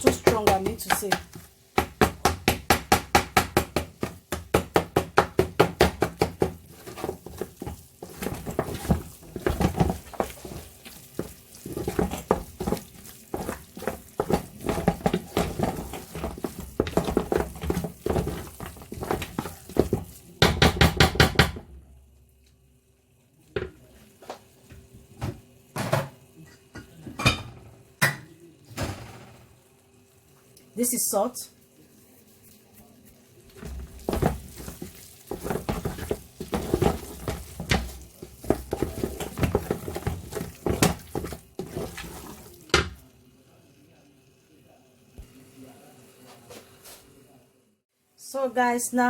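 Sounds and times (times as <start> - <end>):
utensil knocking against cooking pot: 0.0 - 10.6, 11.2 - 21.7.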